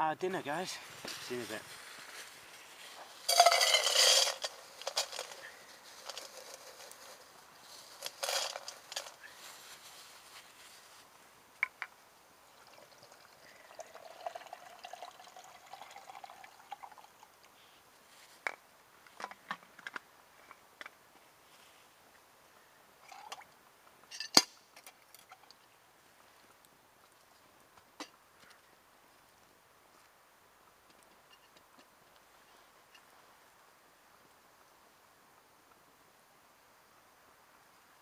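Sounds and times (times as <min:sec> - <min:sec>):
sharp clinks: 0:03.3 - 0:05.4
water pouring into container: 0:12.5 - 0:17.3.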